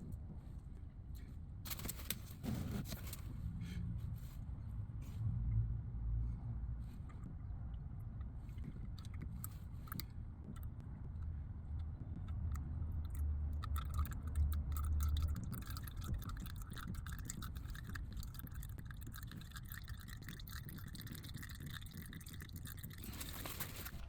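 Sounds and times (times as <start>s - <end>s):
oil trickling through engine: 6.8s - 24.0s.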